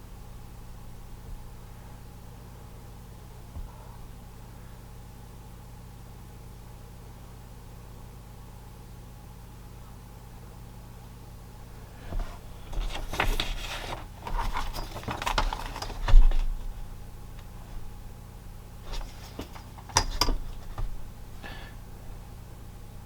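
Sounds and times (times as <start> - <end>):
steady low hum: 0.0 - 23.0
small objects clicking and rustling: 12.6 - 16.7.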